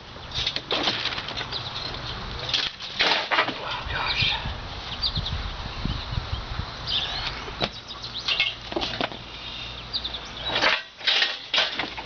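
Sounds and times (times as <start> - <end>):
small birds chirping: 0.0 - 0.6, 1.2 - 2.8, 3.6 - 10.7
mower scraping on pallet: 10.4 - 12.0.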